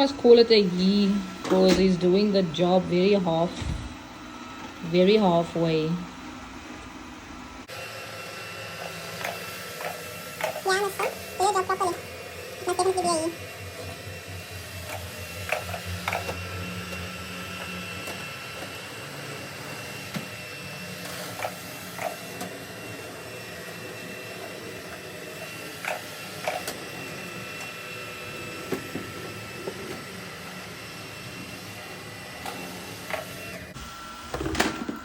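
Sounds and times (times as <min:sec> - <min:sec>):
robot vacuum whirring: 0:00.0 - 0:35.0.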